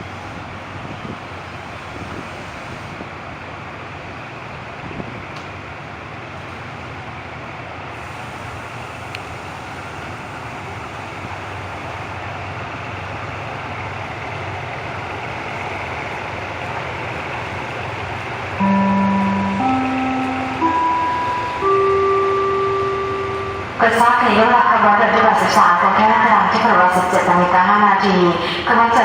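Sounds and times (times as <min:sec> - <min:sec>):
diesel locomotive engine idling: 0:00.0 - 0:29.0.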